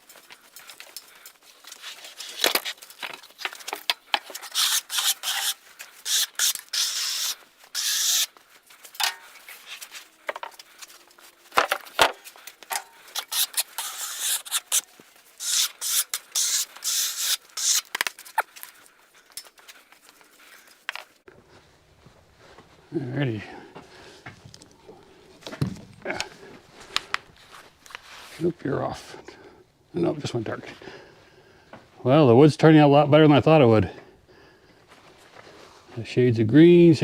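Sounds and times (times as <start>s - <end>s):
scratchy rubbing strokes: 4.3s - 11.5s, 13.0s - 18.5s.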